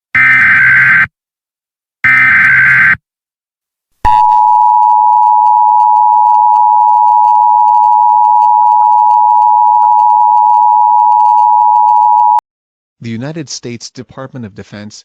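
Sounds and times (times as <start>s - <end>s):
two-tone alert alarm: 2.0s - 3.0s, 4.1s - 12.4s.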